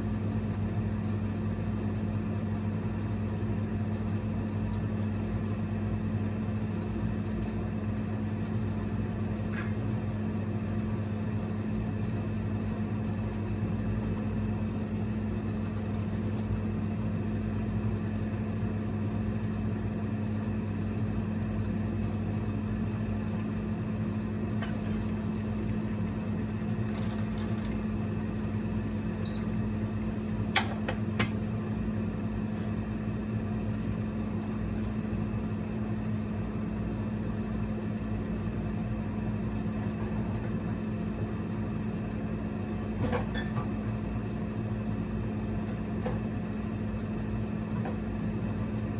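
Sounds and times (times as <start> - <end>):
induction cooktop humming: 0.0 - 48.9.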